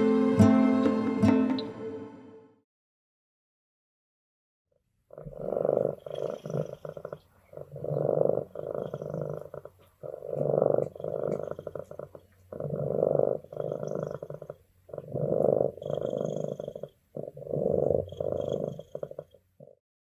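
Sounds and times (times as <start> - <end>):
cat purring: 5.1 - 19.8.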